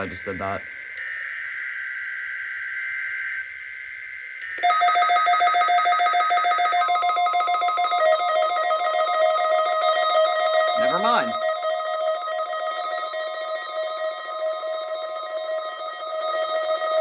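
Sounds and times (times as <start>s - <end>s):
buzzy data tones: 0.0s - 17.0s
steady low tone: 0.0s - 17.0s
alarm pulsing ring: 4.2s - 17.0s.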